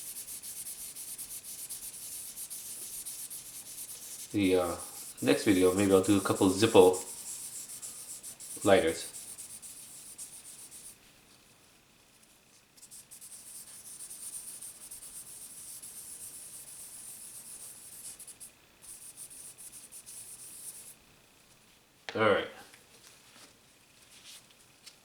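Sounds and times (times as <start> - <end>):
sandpaper rubbing on knife: 0.0 - 11.0, 12.8 - 21.0.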